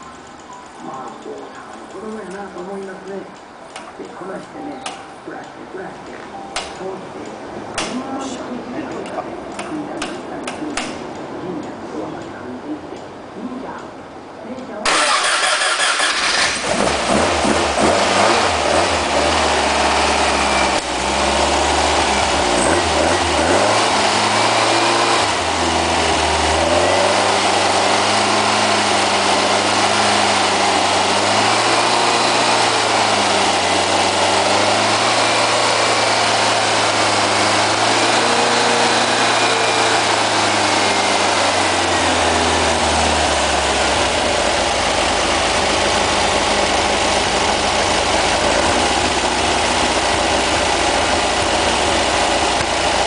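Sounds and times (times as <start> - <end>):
engine running unevenly: 14.9 - 53.0.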